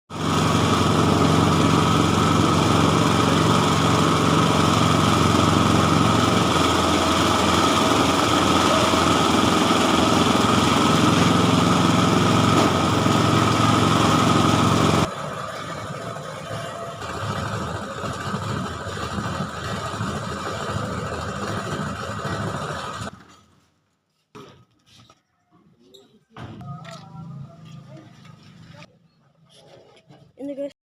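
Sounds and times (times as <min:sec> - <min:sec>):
threshing machine engine running: 0:00.1 - 0:23.2.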